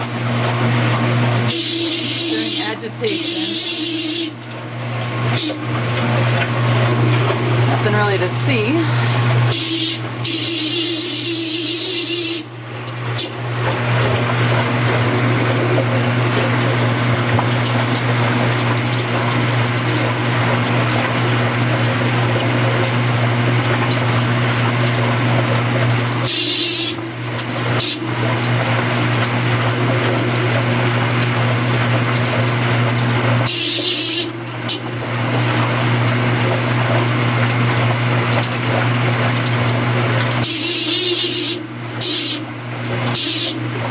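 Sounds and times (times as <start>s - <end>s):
washing machine humming and grinding: 0.0s - 43.9s
harsh high-pitched screeches: 1.5s - 4.4s, 9.5s - 12.5s.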